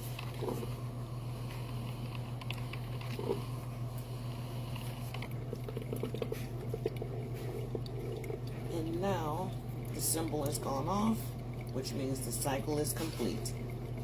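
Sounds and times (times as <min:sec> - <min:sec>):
coffee maker gurgling: 0:00.0 - 0:14.0
coffee maker humming: 0:00.0 - 0:14.0
water dripping through grounds: 0:05.1 - 0:14.0.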